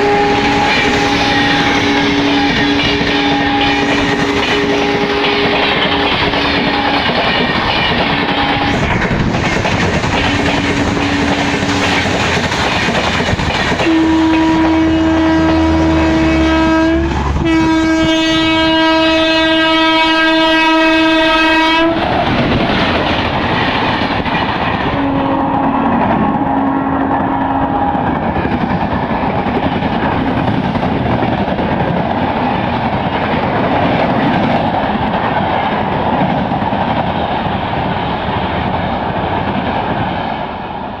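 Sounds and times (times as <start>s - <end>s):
locomotive horn: 0.0s - 7.2s, 8.1s - 8.8s, 10.2s - 11.9s, 13.8s - 22.0s, 24.9s - 28.0s
train passing at speed: 0.0s - 41.0s.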